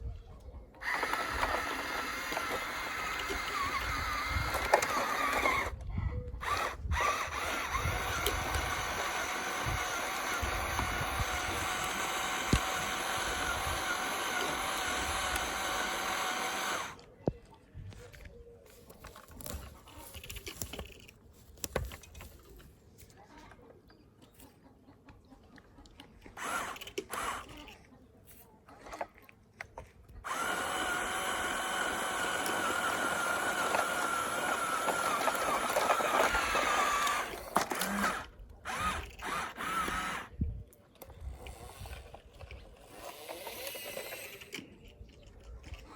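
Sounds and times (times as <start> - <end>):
small motor whirring: 0.8 - 17.0, 26.4 - 27.8, 30.2 - 40.5, 41.1 - 45.0.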